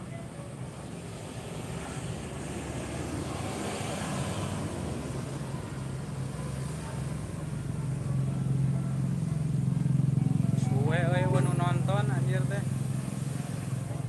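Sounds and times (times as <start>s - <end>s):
bus engine humming: 0.0s - 14.0s.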